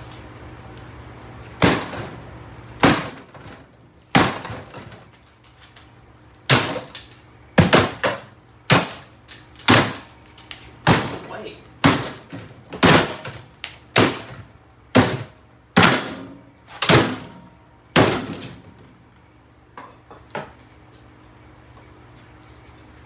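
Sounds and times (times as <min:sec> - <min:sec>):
heavy blows on a fridge: 0:00.0 - 0:05.1, 0:06.4 - 0:10.2, 0:10.8 - 0:19.1.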